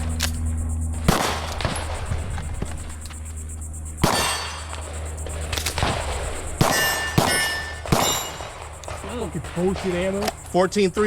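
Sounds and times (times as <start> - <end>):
pistol shots: 1.0 - 2.0, 4.0 - 10.5
steel targets clanging: 4.0 - 4.8, 6.6 - 10.7.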